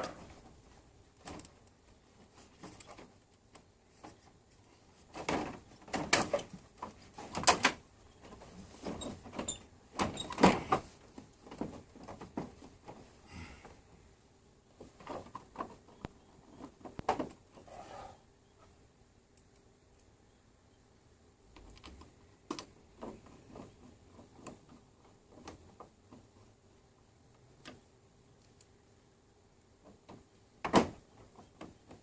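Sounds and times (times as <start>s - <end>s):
handling knocks and clatters: 4.9s - 13.2s.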